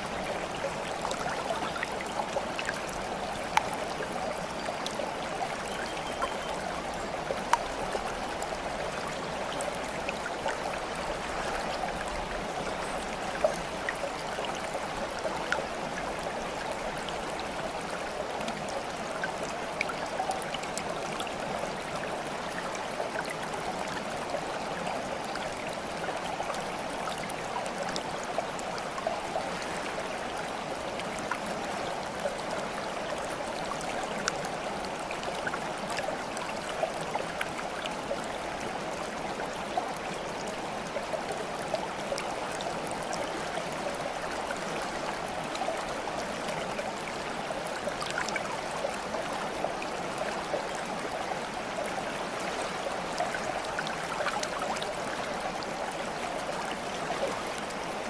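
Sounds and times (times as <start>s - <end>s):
flowing water: 0.0s - 58.0s
water plinks and splashes: 0.2s - 8.3s.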